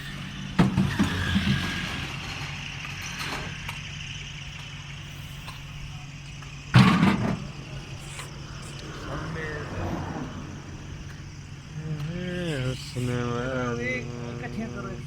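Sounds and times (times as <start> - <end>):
vehicle engine idling: 0.0 - 15.0.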